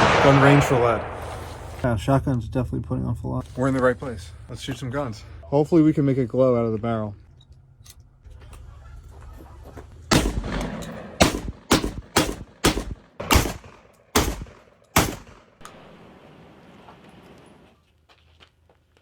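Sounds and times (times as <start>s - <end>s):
gunshots with echo: 0.0s - 1.8s, 10.1s - 16.2s.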